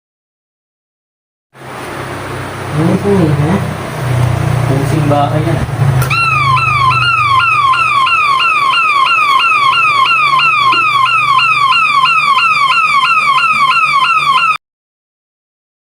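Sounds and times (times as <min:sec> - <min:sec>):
police siren yelping: 0:06.0 - 0:14.6.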